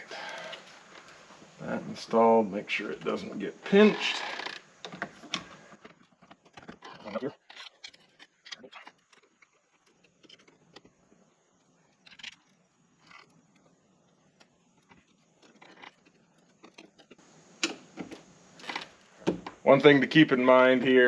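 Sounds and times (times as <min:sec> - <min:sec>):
lock parts clicking and scraping: 0:03.8 - 0:19.6.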